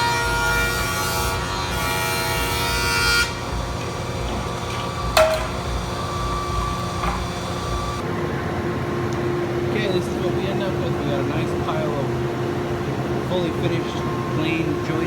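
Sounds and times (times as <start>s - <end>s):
machine hum: 1.8s - 8.0s
power tool whining: 1.8s - 8.0s.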